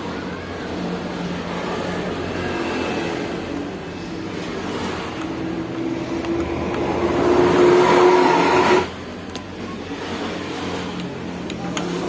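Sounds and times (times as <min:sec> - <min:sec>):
motorcycle engine revving: 0:01.8 - 0:09.2.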